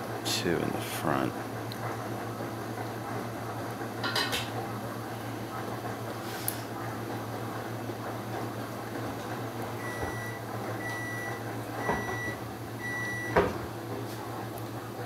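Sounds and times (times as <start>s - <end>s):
appliance beeps: 9.7s - 13.7s.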